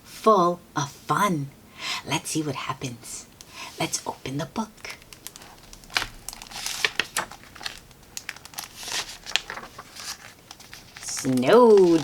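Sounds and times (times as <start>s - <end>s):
paper pages rustling: 4.9s - 12.0s.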